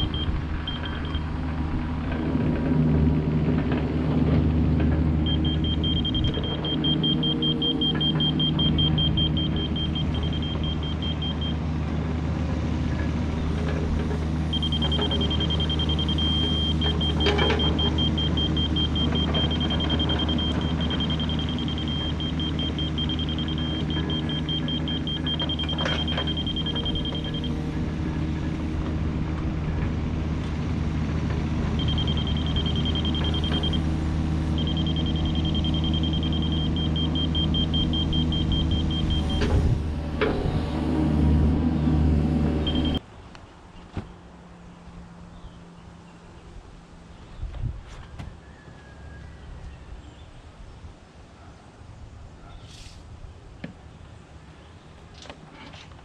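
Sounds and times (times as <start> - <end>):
backup alarm beeping: 0.0 - 1.3, 5.2 - 11.6, 14.5 - 27.7, 31.8 - 39.6, 42.6 - 43.0
diesel engine running: 0.0 - 43.3.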